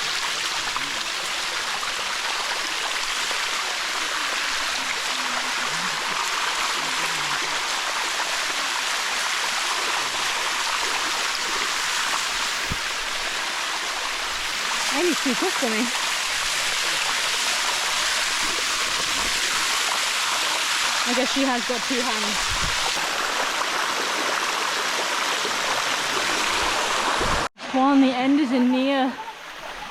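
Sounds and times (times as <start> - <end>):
waterfall rushing over rock: 0.0 - 27.5.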